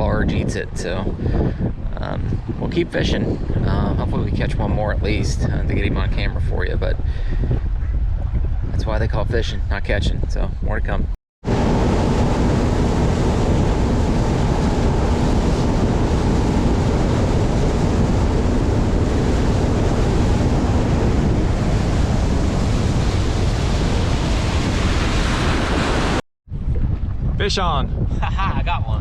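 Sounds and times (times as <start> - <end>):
wind buffeting microphone: 0.0 - 29.0
rushing water: 11.5 - 26.2.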